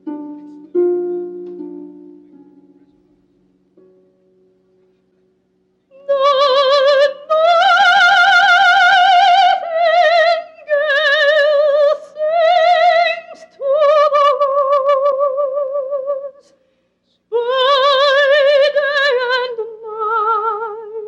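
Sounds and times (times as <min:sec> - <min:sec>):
soft accompaniment: 0:00.0 - 0:21.0
operatic soprano singing: 0:05.9 - 0:16.5, 0:17.3 - 0:21.0.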